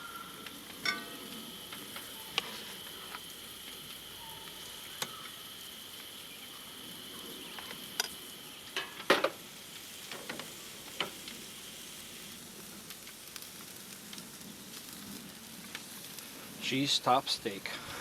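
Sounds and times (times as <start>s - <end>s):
food sizzling in frying pan: 0.0s - 18.0s.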